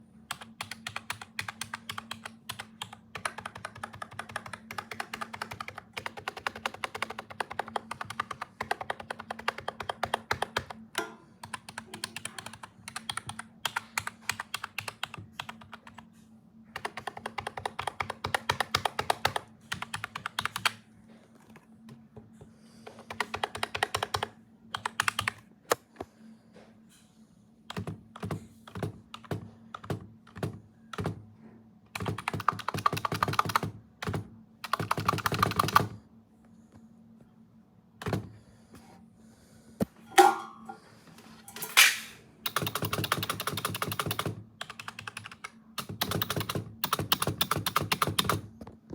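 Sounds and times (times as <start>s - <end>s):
steady low hum: 0.0s - 42.4s
fast keyboard typing: 0.3s - 16.1s, 16.7s - 20.8s, 22.8s - 25.4s, 27.7s - 31.2s, 31.9s - 36.0s, 41.8s - 48.5s.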